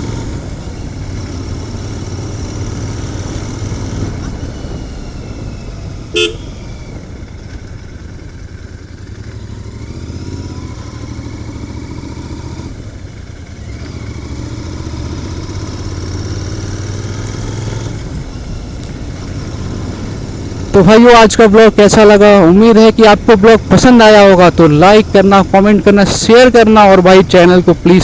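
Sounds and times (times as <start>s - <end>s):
motorcycle engine rumble: 0.0s - 28.0s
horn toot: 6.1s - 6.7s.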